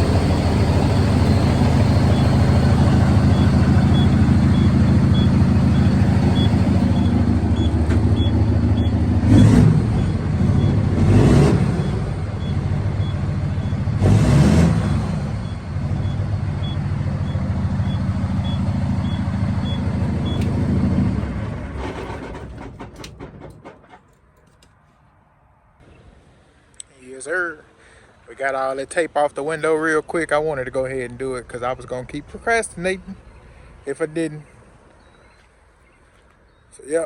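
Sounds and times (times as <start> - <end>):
truck diesel engine running: 0.0 - 23.9.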